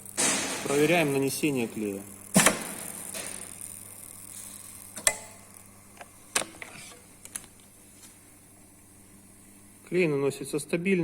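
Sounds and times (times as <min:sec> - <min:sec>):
edge-banding machine humming: 0:00.0 - 0:07.3.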